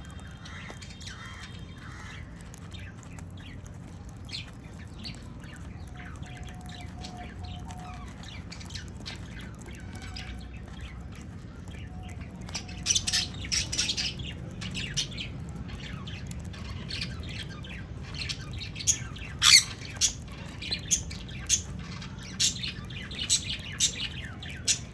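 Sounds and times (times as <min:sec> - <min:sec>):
parrots squawking and chirping: 0:00.1 - 0:03.6, 0:05.7 - 0:11.0, 0:11.9 - 0:24.9
loud parrot screech: 0:19.4 - 0:19.8.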